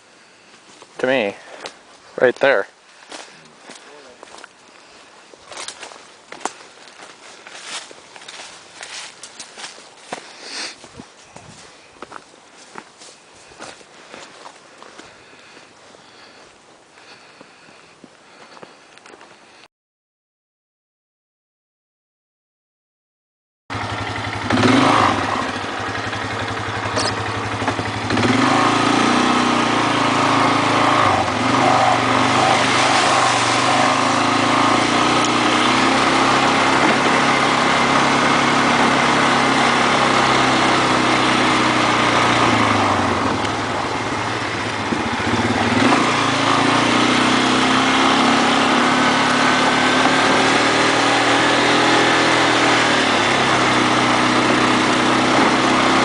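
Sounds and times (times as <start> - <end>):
atv engine revving: 23.7 - 56.0
broad rushing noise: 31.4 - 37.9.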